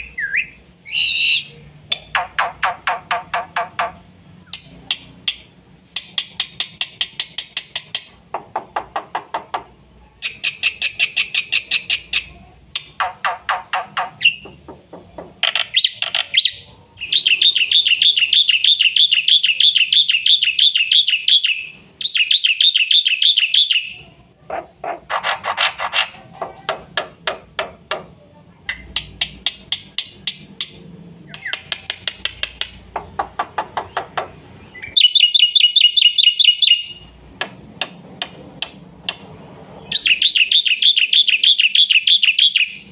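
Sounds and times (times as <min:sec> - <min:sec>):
bird singing: 0:00.0 - 0:27.2, 0:28.7 - 0:37.2, 0:39.8 - 0:42.9
fast bird trill: 0:10.2 - 0:14.5, 0:15.4 - 0:24.0, 0:33.6 - 0:37.1, 0:39.8 - 0:42.9.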